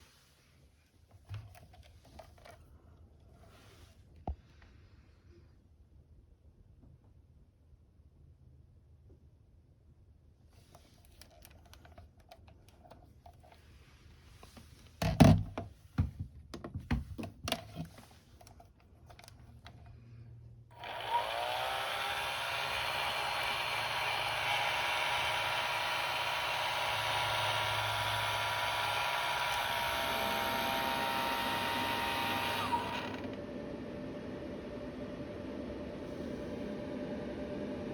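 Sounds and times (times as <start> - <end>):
hair dryer blowing: 20.7 - 37.9.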